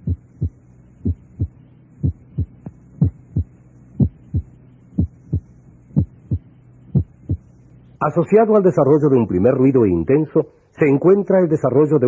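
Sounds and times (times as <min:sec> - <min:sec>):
heartbeat: 0:00.0 - 0:07.5
steady low hum: 0:00.0 - 0:12.0.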